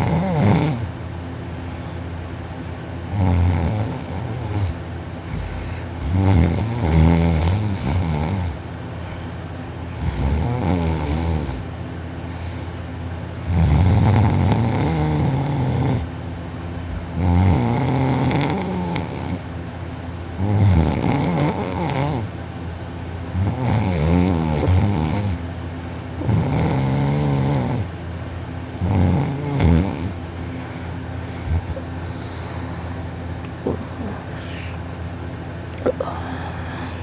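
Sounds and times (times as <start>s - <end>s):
man snoring loudly: 0.0s - 0.9s, 3.1s - 8.6s, 9.9s - 11.6s, 13.4s - 16.1s, 17.0s - 19.5s, 20.4s - 22.3s, 23.3s - 25.4s, 26.2s - 27.9s, 28.8s - 30.2s, 31.4s - 31.8s.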